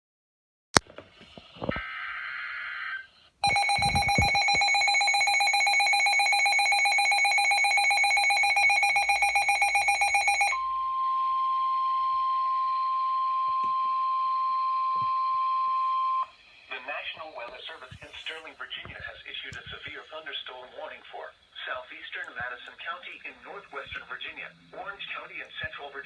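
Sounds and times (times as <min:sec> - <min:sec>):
digital header data burst: 0:03.4 - 0:05.3
two-tone attention signal: 0:03.4 - 0:16.3.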